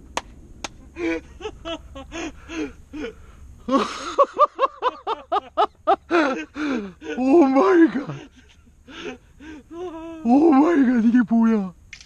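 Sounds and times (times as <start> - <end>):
man gasping and panting: 2.1 - 4.0, 6.1 - 7.3, 8.9 - 10.2.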